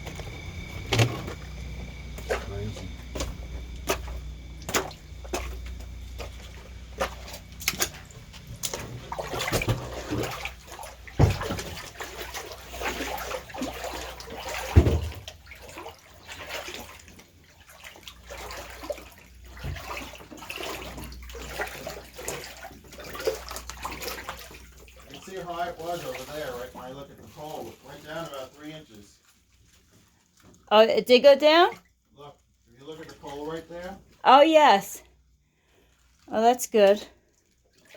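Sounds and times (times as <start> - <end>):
floodwater splashing and sloshing: 0.0 - 37.9.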